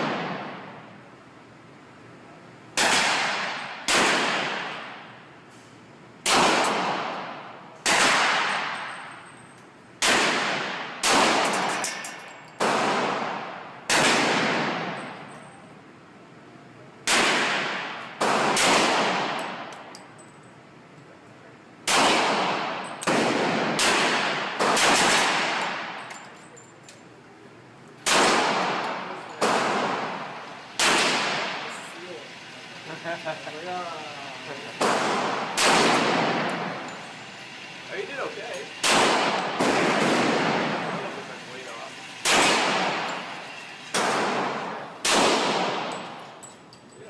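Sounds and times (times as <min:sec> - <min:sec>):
pistol shots echoing: 0:00.0 - 0:00.8, 0:02.8 - 0:05.1, 0:06.2 - 0:09.1, 0:10.0 - 0:15.3, 0:17.0 - 0:20.0, 0:21.8 - 0:26.1, 0:28.0 - 0:31.7, 0:34.8 - 0:37.1, 0:38.8 - 0:41.1, 0:42.2 - 0:46.2.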